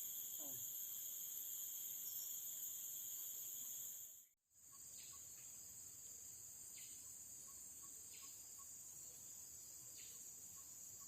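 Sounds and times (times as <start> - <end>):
high-pitched insect drone: 0.0 - 8.9
short insect chirps: 0.0 - 11.0.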